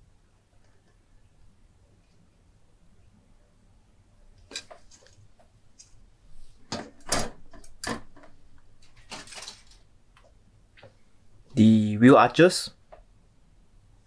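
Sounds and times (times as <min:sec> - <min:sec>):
plastic parts clacking: 0:07.5 - 0:09.8
plastic rustling: 0:08.8 - 0:09.9.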